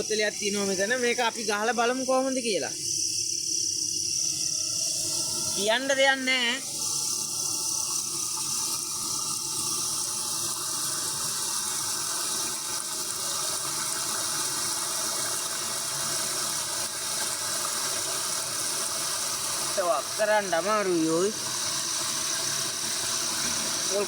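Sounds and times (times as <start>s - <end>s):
high insect drone: 0.0s - 24.0s.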